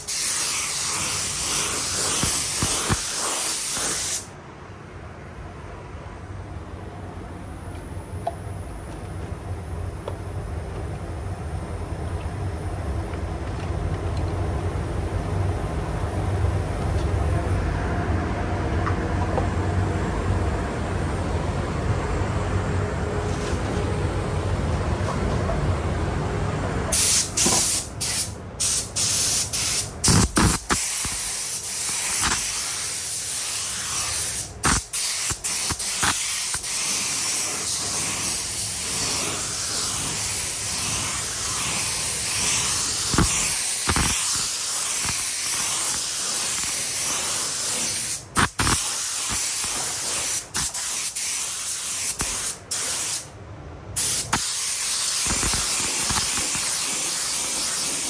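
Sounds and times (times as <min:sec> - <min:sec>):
spray paint gun hissing: 0:00.0 - 0:04.3, 0:26.9 - 0:53.3, 0:54.0 - 0:58.0.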